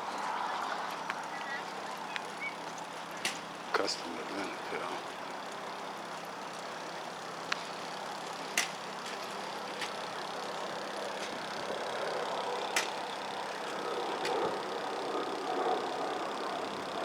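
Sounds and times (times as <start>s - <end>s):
outdoor background noise: 0.0s - 17.0s
vehicle engine running: 0.0s - 17.0s
sharp clicks: 5.4s - 14.9s.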